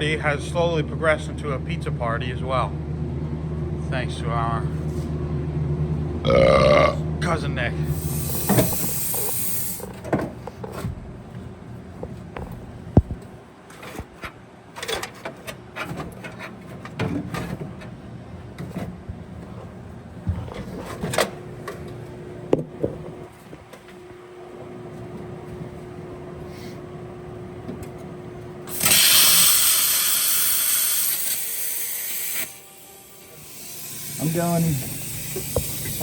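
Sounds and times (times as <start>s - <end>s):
loud hissing rush: 7.8s - 9.8s, 28.7s - 31.3s, 33.3s - 36.0s.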